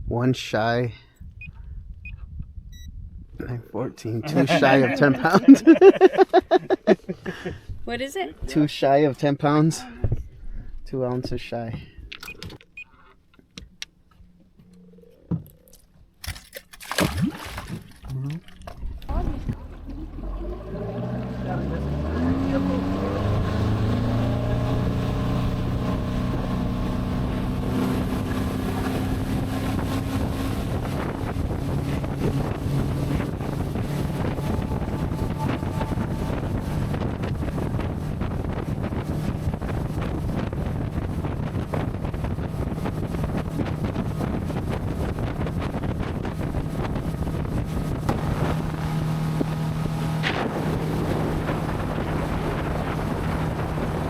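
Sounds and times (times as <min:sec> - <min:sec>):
wind on microphone: 0:01.2 - 0:03.6, 0:21.9 - 0:54.0
motorboat engine running: 0:19.0 - 0:54.0.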